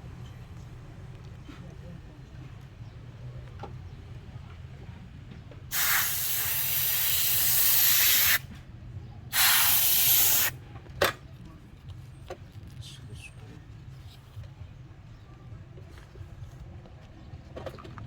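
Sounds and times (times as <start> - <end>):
pressurised spray hissing: 5.7 - 8.4, 9.3 - 10.5.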